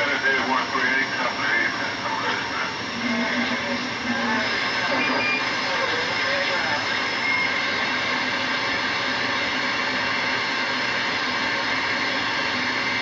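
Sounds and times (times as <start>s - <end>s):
radio static hiss: 0.0s - 13.0s.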